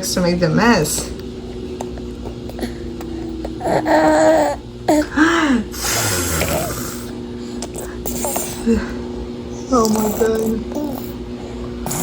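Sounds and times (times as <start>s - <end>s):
faint steady hum: 0.0s - 12.0s
breathy noisy sound: 0.9s - 12.0s
baby crying: 3.6s - 5.1s.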